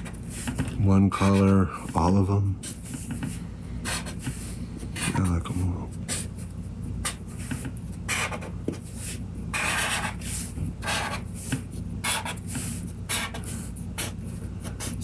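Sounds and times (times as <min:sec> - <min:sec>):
drawing tool scratching on paper: 0:02.6 - 0:05.3, 0:07.0 - 0:15.0.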